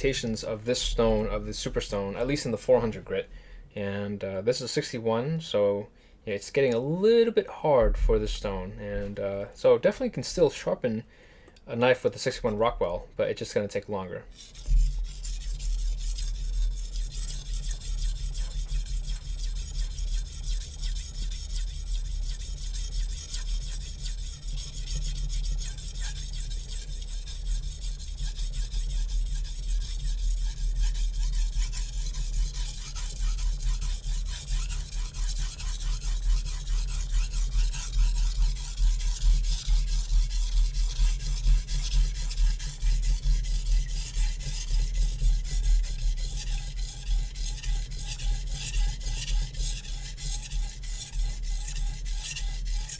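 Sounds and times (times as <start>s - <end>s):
knife rasping on whetstone: 14.3s - 52.9s.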